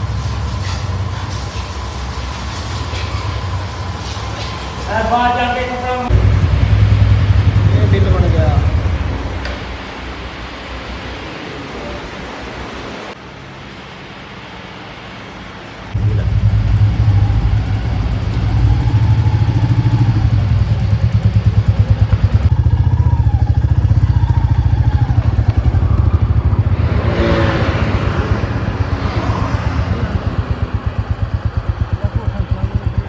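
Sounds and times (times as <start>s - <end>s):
motorcycle engine running: 6.1s - 11.3s, 15.9s - 33.0s.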